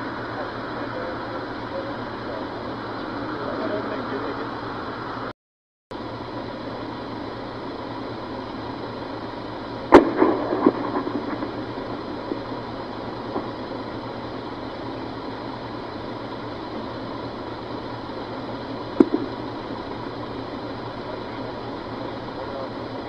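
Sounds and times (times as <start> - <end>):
engine-like hum: 0.0 - 5.3, 5.9 - 23.0
gunshot with echoes: 9.9 - 11.6.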